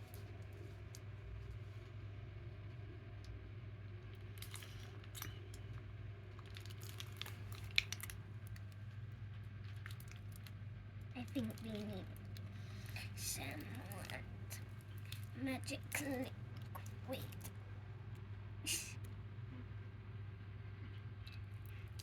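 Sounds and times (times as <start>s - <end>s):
steady low hum: 0.0s - 22.0s
slime squishing and clicking: 6.4s - 8.8s.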